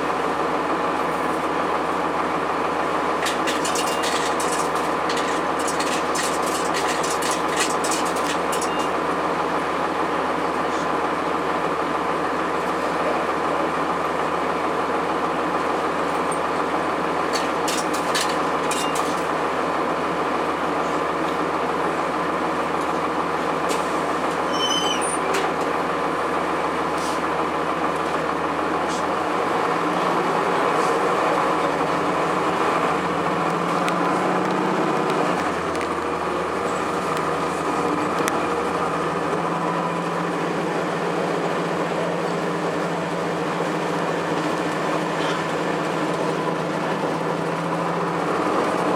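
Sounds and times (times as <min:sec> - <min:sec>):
diesel bus engine running: 0:00.0 - 0:48.9
road and body noise: 0:00.1 - 0:11.8, 0:14.8 - 0:48.9.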